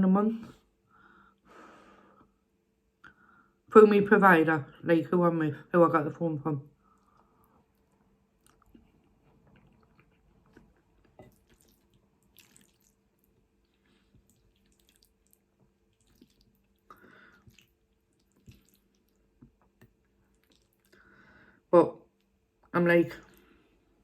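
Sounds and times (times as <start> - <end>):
chewing pasta: 6.9 - 21.2.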